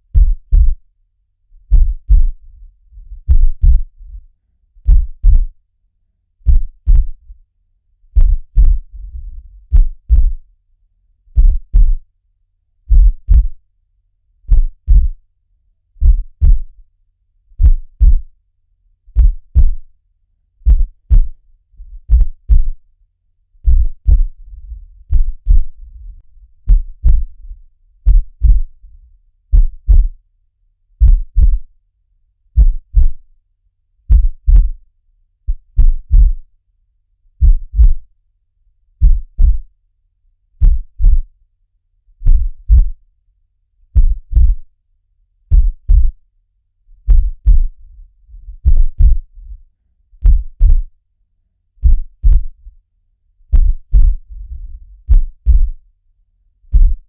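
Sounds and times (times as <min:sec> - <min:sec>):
heartbeat thumps: 0:00.1 - 0:00.8, 0:01.7 - 0:02.4, 0:03.0 - 0:04.2, 0:04.8 - 0:05.6, 0:06.5 - 0:07.3, 0:08.2 - 0:10.4, 0:11.4 - 0:12.0, 0:12.9 - 0:13.6, 0:14.5 - 0:15.2, 0:16.0 - 0:16.8, 0:17.6 - 0:18.3, 0:19.1 - 0:19.9, 0:20.6 - 0:22.8, 0:23.6 - 0:28.8, 0:29.5 - 0:30.2, 0:31.0 - 0:31.7, 0:32.6 - 0:33.2, 0:34.1 - 0:34.8, 0:35.5 - 0:36.5, 0:37.4 - 0:38.1, 0:39.0 - 0:39.7, 0:40.6 - 0:41.3, 0:42.2 - 0:43.0, 0:44.0 - 0:44.7, 0:45.5 - 0:46.2, 0:47.0 - 0:49.6, 0:50.2 - 0:50.9, 0:51.8 - 0:52.6, 0:53.5 - 0:55.8, 0:56.7 - 0:57.0.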